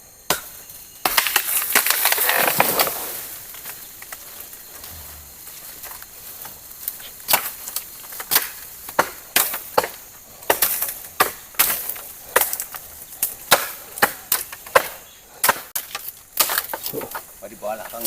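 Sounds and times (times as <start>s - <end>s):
blade chopping bamboo: 8.2s - 17.0s.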